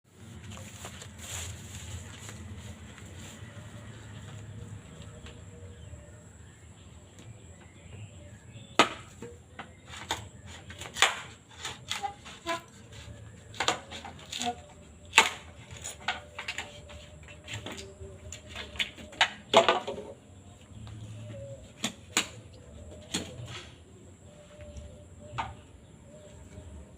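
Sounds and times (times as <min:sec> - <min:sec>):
bamboo splitting with blade: 0:09.9 - 0:16.3.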